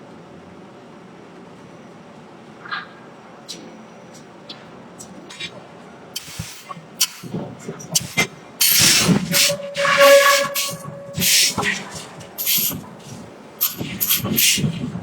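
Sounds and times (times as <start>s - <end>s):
loud hissing rushes: 6.2s - 15.0s
steady whistling tone: 7.8s - 15.0s.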